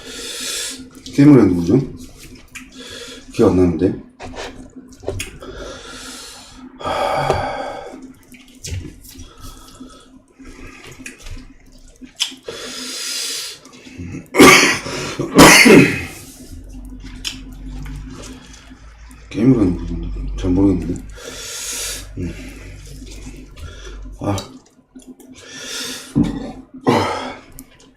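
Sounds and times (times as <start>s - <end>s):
faint steady hum: 0.0s - 27.9s
wet chewing and slurping: 7.9s - 12.5s, 16.0s - 26.6s.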